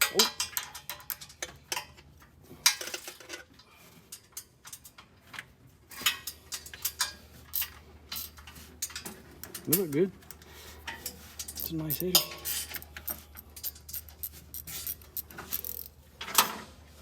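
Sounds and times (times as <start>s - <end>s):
wrench clicking on bolts: 6.1s - 16.5s.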